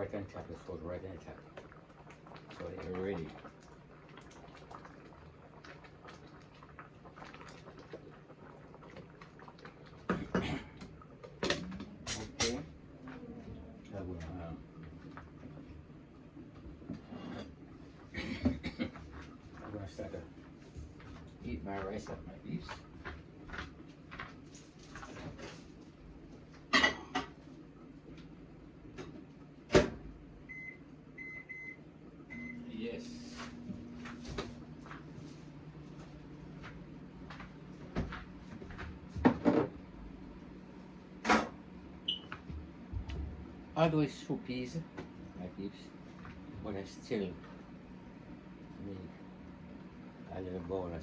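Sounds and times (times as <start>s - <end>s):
stew simmering with bubbles popping: 0.0s - 32.9s
low steady hum: 0.0s - 51.0s
dishes clattering: 26.7s - 27.4s.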